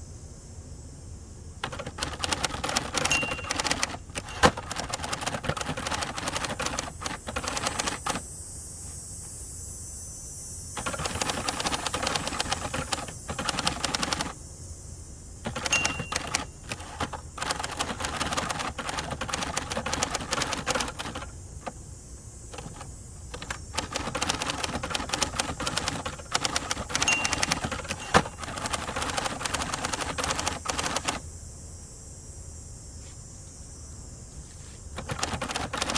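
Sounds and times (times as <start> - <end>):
manual typewriter keystrokes clacking: 1.6 - 8.2, 10.8 - 14.4, 15.4 - 21.8, 22.5 - 31.2, 35.0 - 35.9.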